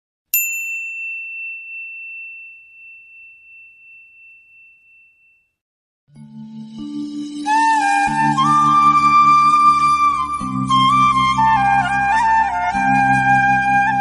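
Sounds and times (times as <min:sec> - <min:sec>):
high bell-like ding: 0:00.3 - 0:05.6.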